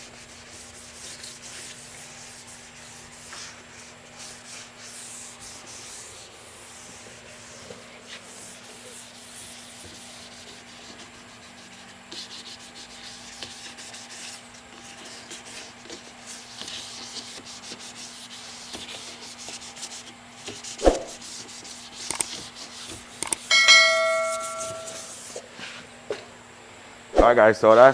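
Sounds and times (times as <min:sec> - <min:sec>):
sandpaper rubbing on metal panel: 0:00.0 - 0:23.2
faint steady hum: 0:21.2 - 0:25.6.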